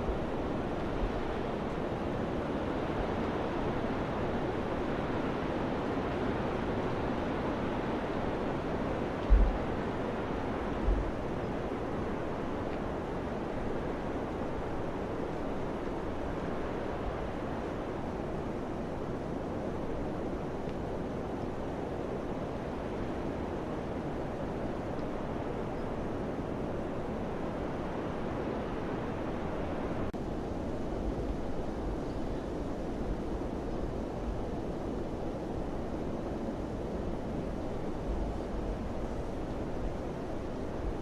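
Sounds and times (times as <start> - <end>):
wind blowing: 8.0 - 41.0
wind buffeting microphone: 8.6 - 12.6.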